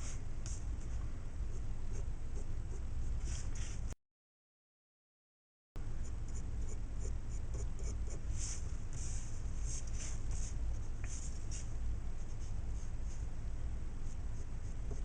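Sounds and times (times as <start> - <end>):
steady low hum: 0.0 - 4.0, 5.8 - 15.0
pencil scratching on paper: 6.3 - 8.7.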